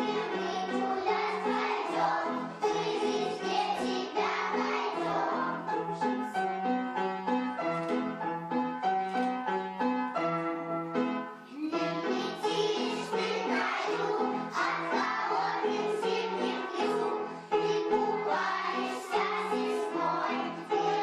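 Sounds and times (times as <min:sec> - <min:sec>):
children's song with bass line: 0:00.0 - 0:06.7, 0:11.5 - 0:21.0.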